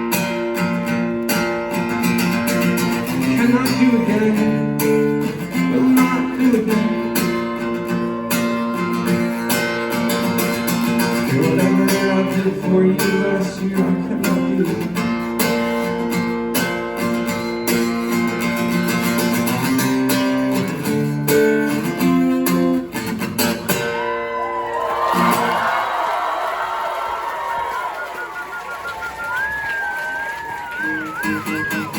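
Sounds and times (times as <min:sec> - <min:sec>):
acoustic guitar strumming: 0:00.0 - 0:24.6, 0:30.4 - 0:31.9.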